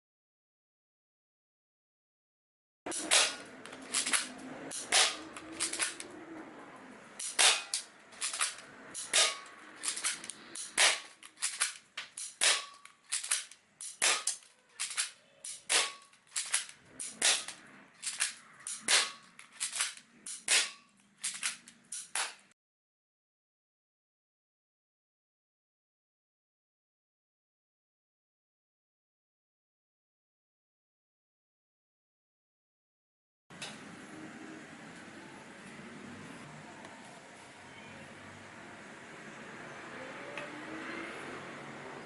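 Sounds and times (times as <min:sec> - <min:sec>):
airsoft pistol firing: 0:02.9 - 0:06.0, 0:07.2 - 0:17.6, 0:18.7 - 0:19.2, 0:20.3 - 0:20.8.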